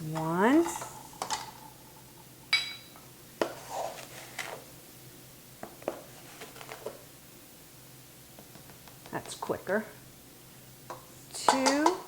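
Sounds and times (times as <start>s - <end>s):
measuring cup clinking on bowl: 2.5s - 3.0s.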